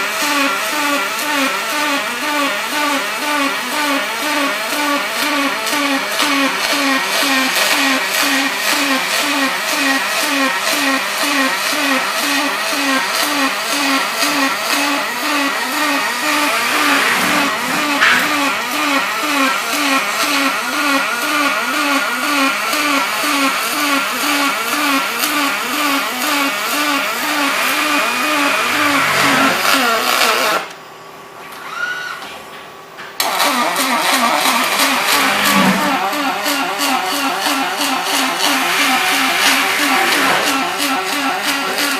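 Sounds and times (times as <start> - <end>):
welding arc buzzing crackle: 0.0 - 30.8.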